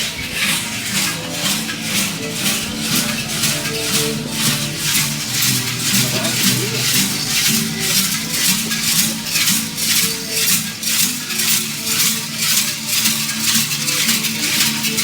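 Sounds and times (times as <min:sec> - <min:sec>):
simple instrumental melody: 0:00.0 - 0:11.9
rattles shaken in a beat: 0:00.0 - 0:15.0.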